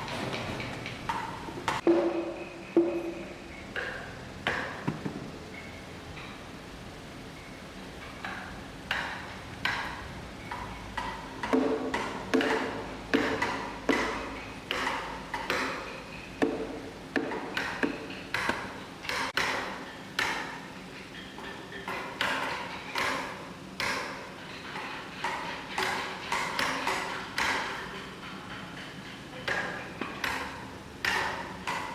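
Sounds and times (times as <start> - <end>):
hammer blows ringing: 0.0 - 5.8.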